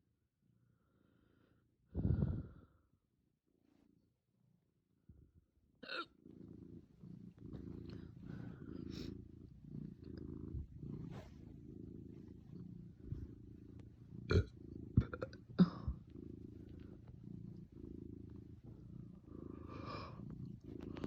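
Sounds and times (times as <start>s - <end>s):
sharp hiccups: 5.8s - 6.1s
cat purring: 6.0s - 21.0s.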